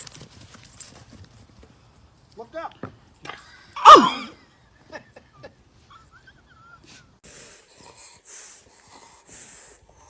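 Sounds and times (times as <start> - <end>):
dog breathing wheezily: 7.0 - 10.0.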